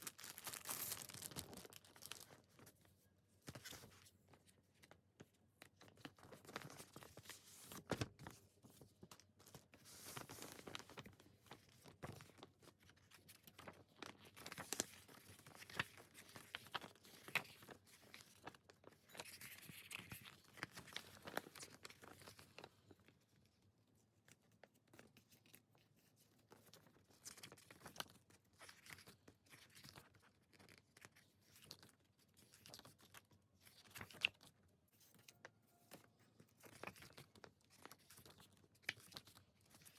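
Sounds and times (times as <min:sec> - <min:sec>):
plastic wrap tearing and crinkling: 0:00.0 - 0:02.3.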